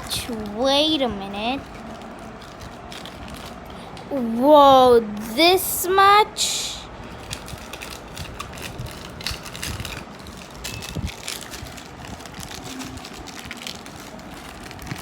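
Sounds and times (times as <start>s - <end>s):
fidget toy crunching and clicking: 1.5s - 4.1s, 7.1s - 15.0s.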